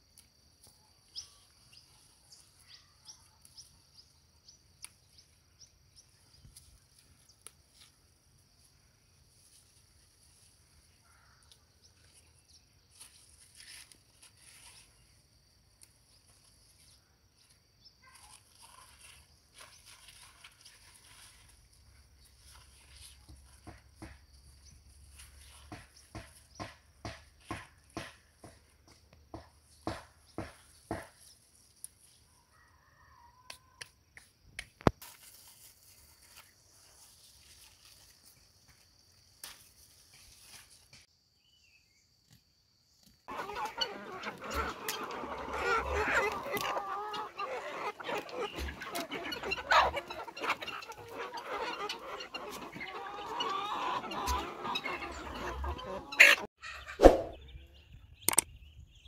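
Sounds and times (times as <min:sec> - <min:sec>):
sharp click: 0:58.3 - 0:58.5.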